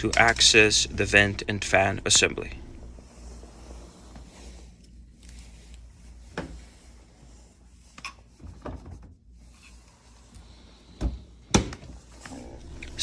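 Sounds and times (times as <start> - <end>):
low steady hum: 0.0 - 7.4, 12.2 - 13.0.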